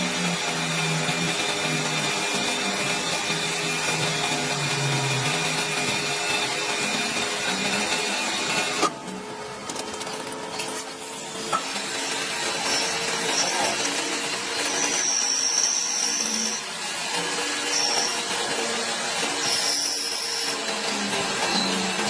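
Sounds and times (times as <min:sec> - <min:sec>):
friction welding machine scraping: 0:09.7 - 0:22.0
high squeal: 0:12.1 - 0:16.7.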